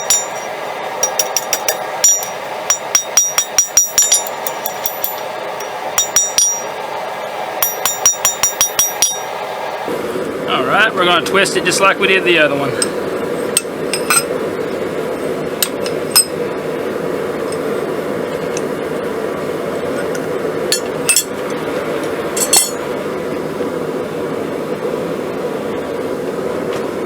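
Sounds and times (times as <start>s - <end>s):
metal tools clinking on steel: 0.0s - 6.7s, 7.6s - 9.3s, 13.6s - 14.3s, 15.6s - 16.4s, 20.7s - 21.4s, 22.4s - 22.8s
forge running: 0.0s - 27.0s.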